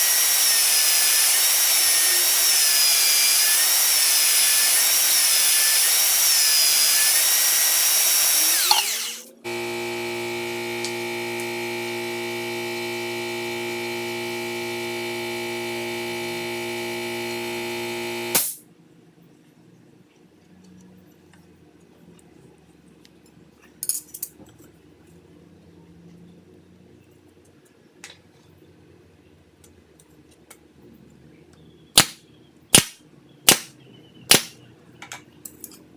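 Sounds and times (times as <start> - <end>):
power tool running: 0.0 - 18.6
motor hum: 8.0 - 18.5.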